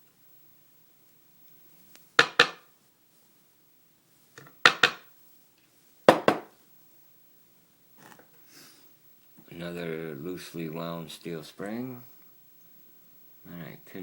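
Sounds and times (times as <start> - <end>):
metal knocks on hard surface: 6.1 - 6.5.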